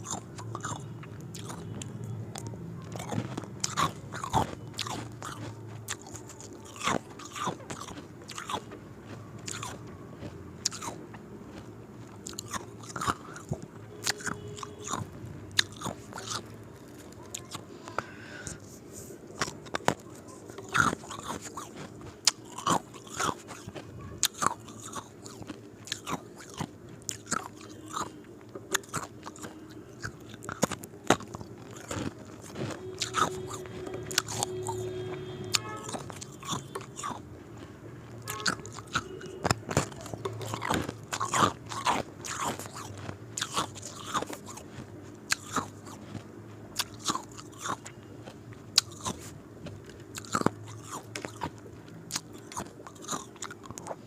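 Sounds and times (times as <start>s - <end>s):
ice cubes crunching: 28.7s - 34.8s, 38.3s - 46.0s, 48.8s - 49.2s, 50.1s - 51.5s, 52.1s - 54.0s.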